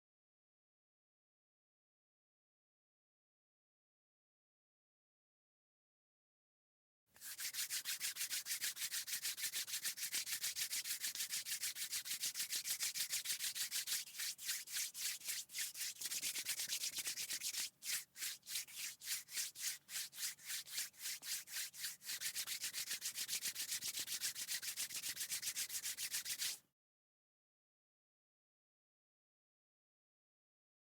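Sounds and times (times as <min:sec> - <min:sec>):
hands rubbing together: 0:07.2 - 0:26.6.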